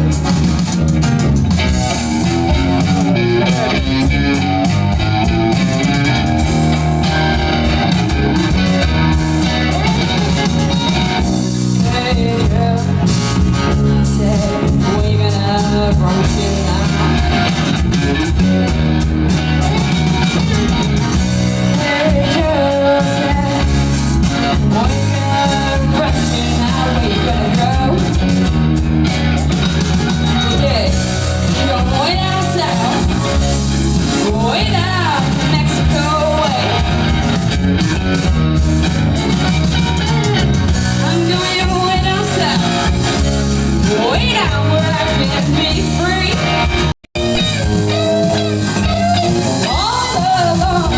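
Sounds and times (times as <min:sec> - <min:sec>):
bass guitar: 0:00.0 - 0:50.9
drums: 0:00.0 - 0:50.9
electric guitar: 0:00.0 - 0:50.9
rock music: 0:00.0 - 0:50.9
person singing: 0:09.5 - 0:18.4, 0:21.6 - 0:28.6, 0:30.2 - 0:37.0, 0:41.0 - 0:42.9, 0:43.7 - 0:50.9.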